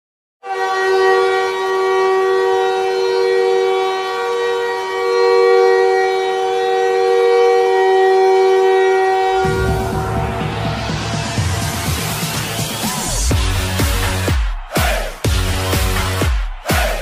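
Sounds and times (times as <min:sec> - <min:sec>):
hockey goal horn: 0:00.4 - 0:12.1.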